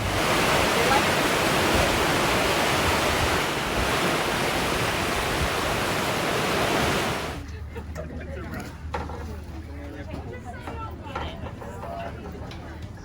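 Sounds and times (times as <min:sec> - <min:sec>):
fast-flowing white water: 0:00.0 - 0:07.4.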